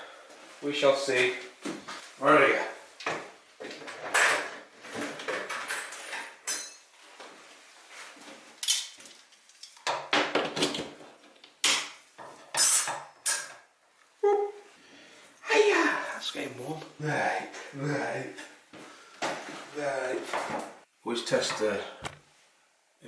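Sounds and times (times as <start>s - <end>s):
tools clinking and rattling: 5.2s - 6.9s, 8.6s - 10.8s.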